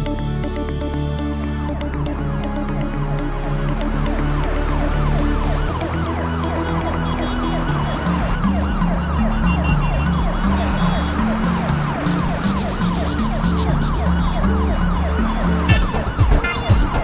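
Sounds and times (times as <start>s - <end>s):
backing music: 0.0s - 17.0s
cartoon siren wailing: 5.0s - 17.0s.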